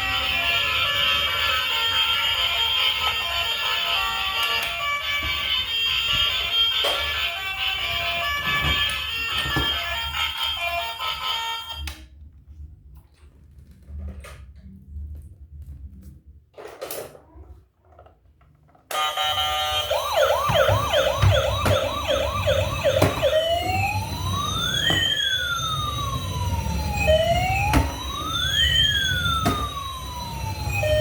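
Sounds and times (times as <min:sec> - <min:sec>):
toy electronic siren: 0:00.0 - 0:11.9, 0:18.9 - 0:31.0.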